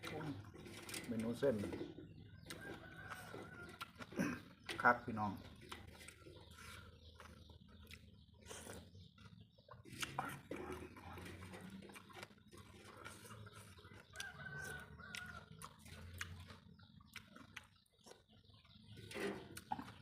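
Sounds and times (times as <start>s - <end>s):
chickens clucking: 0.0s - 20.0s
rooster crowing: 14.2s - 15.5s.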